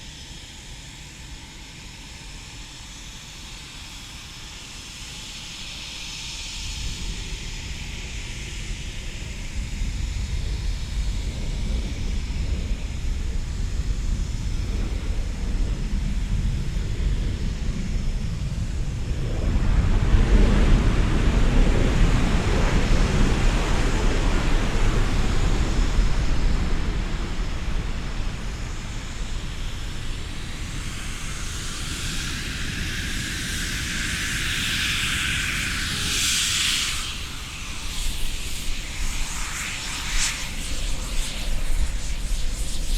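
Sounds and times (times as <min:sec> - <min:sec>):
jet engines rumbling: 0:03.9 - 0:42.9
high-pitched jet hiss: 0:22.1 - 0:42.9.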